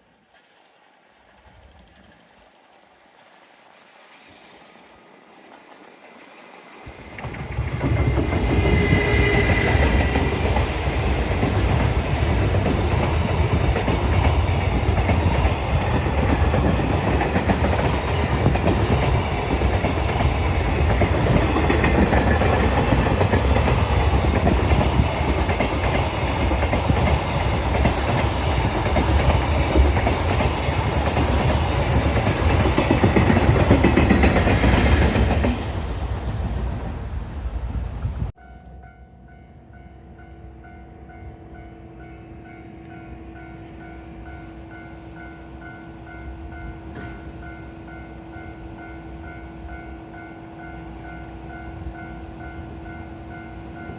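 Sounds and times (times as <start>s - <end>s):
freight train wheels rumbling on rails: 4.4s - 38.4s.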